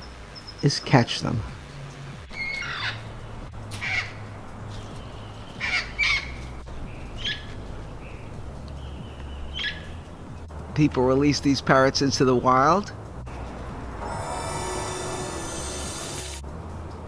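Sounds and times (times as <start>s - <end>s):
parrots squawking: 2.3s - 3.1s, 5.6s - 6.4s.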